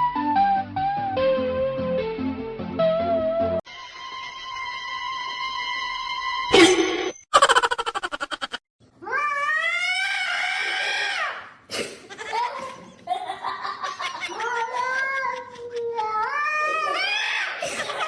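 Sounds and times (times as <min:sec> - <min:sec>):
cat yowling: 0:09.0 - 0:11.4.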